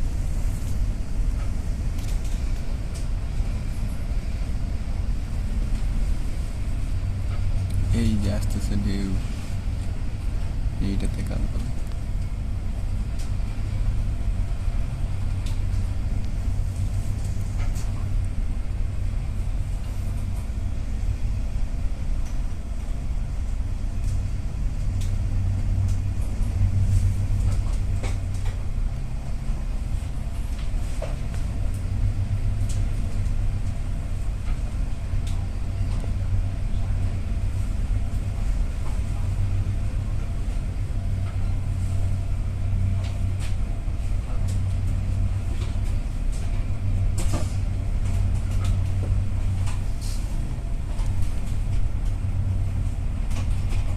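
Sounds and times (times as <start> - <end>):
ship engine droning: 0.0 - 53.9.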